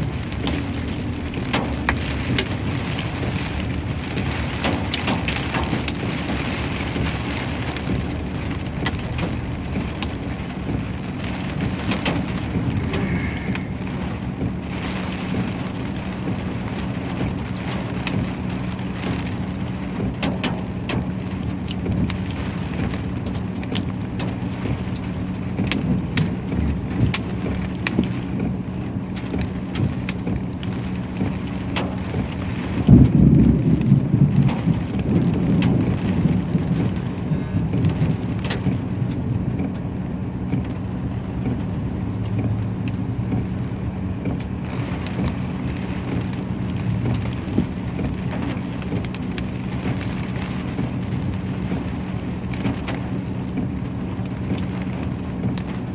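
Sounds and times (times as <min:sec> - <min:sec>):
steady low hum: 0:00.0 - 0:15.0
hail striking hard surfaces: 0:00.0 - 0:39.8, 0:44.2 - 0:55.9
low rumble: 0:00.0 - 0:55.9.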